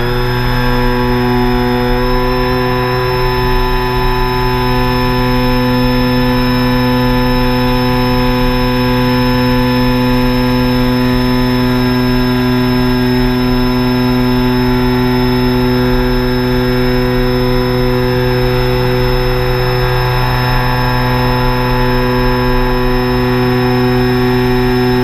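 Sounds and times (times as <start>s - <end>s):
drone propellers humming: 0.0s - 25.0s.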